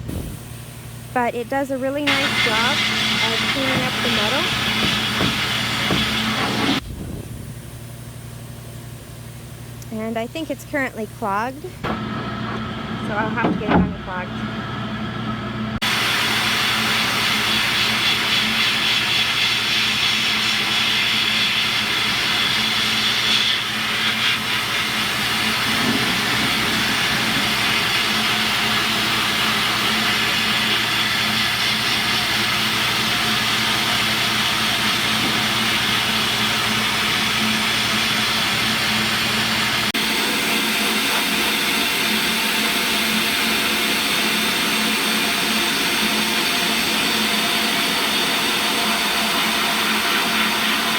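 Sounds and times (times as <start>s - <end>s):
sandblast air gun hissing: 0.0s - 7.7s, 15.8s - 39.9s
low hum: 0.0s - 15.9s.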